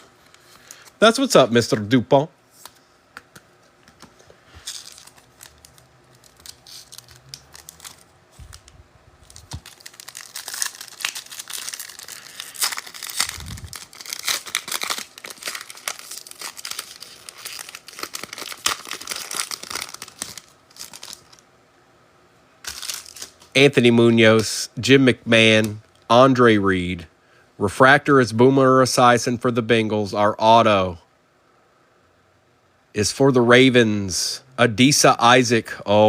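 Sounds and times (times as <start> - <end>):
wrapper tearing and crinkling: 4.6 - 21.4, 22.6 - 23.6.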